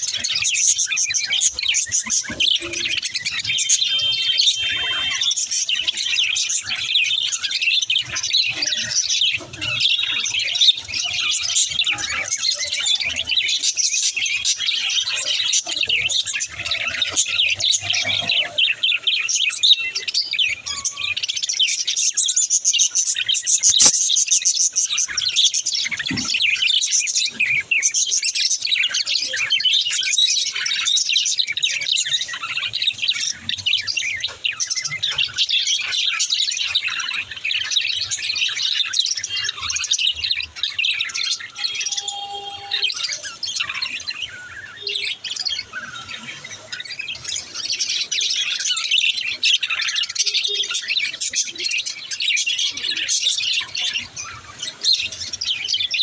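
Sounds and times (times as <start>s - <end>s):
budgerigars chirping: 0.0s - 56.0s.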